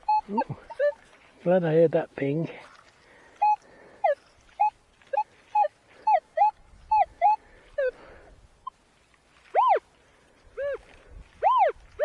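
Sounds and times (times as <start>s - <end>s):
metal detector beeps: 0.0s - 1.0s, 3.4s - 7.9s, 9.6s - 9.8s, 10.6s - 10.8s, 11.4s - 11.7s.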